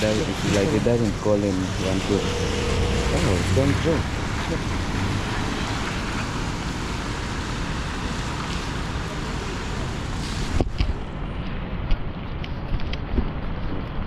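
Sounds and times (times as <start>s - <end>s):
heavy rain hissing: 0.0s - 10.6s.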